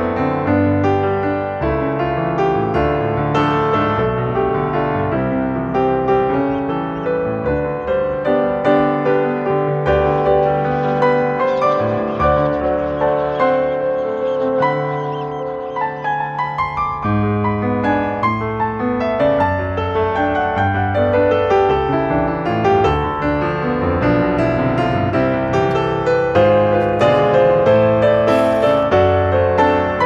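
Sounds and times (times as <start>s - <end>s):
gentle piano music: 0.0s - 30.0s.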